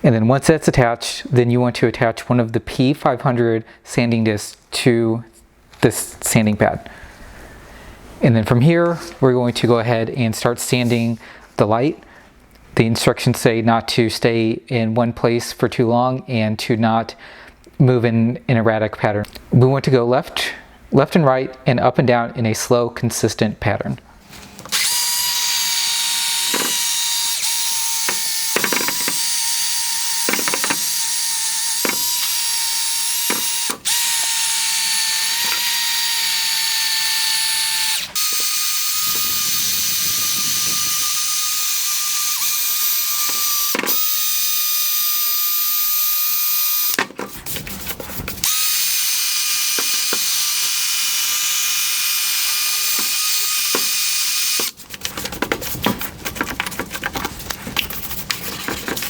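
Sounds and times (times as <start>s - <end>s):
drill sanding plastic whine: 24.7s - 47.2s, 48.4s - 54.8s.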